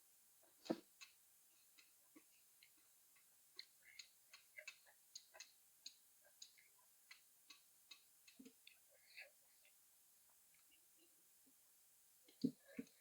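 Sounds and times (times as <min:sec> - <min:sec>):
wet chewing mouth clicks: 0:03.6 - 0:08.6.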